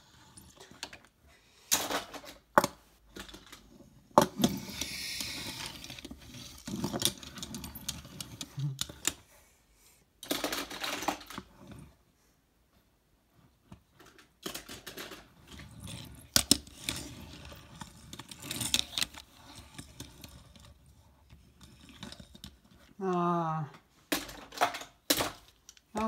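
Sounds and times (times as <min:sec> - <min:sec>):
toy cars clattering together: 0:00.4 - 0:09.2, 0:10.2 - 0:11.7, 0:13.9 - 0:26.0.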